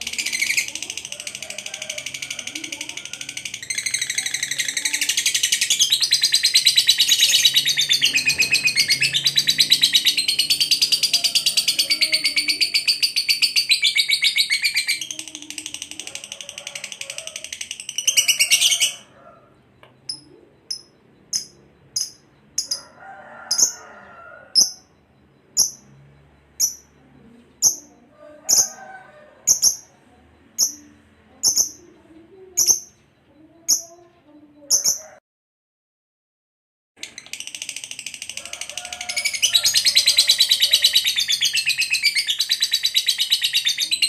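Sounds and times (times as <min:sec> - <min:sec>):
lovebird rapid trill: 0:00.0 - 0:19.2, 0:20.0 - 0:27.0, 0:37.0 - 0:44.0
low chattering bird calls: 0:00.0 - 0:28.7
high bird chirps: 0:02.0 - 0:28.8, 0:37.0 - 0:44.0.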